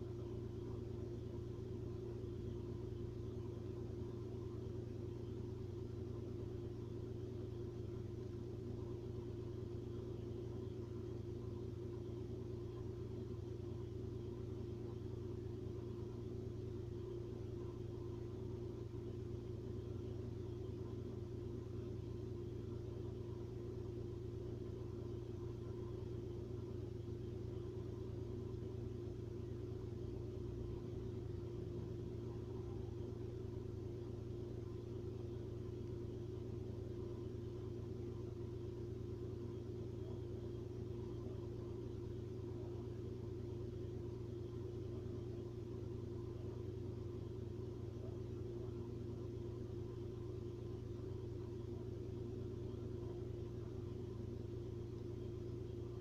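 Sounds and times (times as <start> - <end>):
steady low hum and rumble: 0.0 - 56.0.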